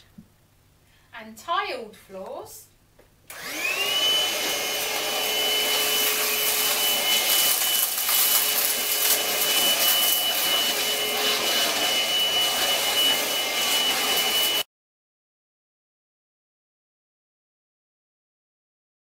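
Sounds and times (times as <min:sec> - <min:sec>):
stick vacuum cleaner whining: 0:03.3 - 0:14.7.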